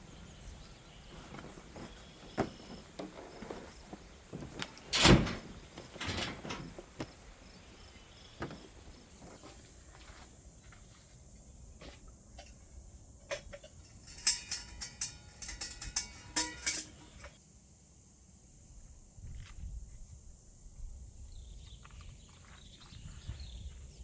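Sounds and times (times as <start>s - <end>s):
camping gear knocking: 1.1s - 7.2s, 8.4s - 9.5s, 13.3s - 17.3s
sharp clicks and clinks: 13.2s - 17.4s.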